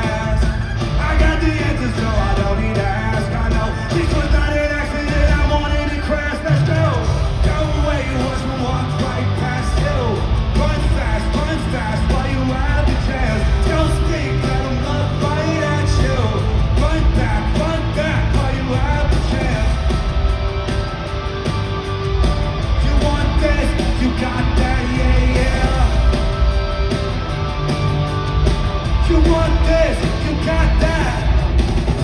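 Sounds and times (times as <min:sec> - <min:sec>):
person singing: 0:00.0 - 0:20.9, 0:22.7 - 0:27.0
live rock band playing: 0:00.0 - 0:32.0
thick bass line: 0:00.0 - 0:32.0.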